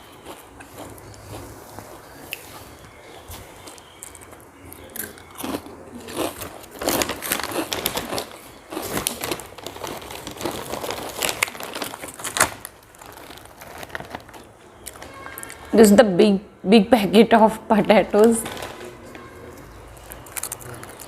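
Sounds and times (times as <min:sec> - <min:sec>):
plastic chip packet crinkling: 0:03.6 - 0:15.7, 0:18.2 - 0:21.0.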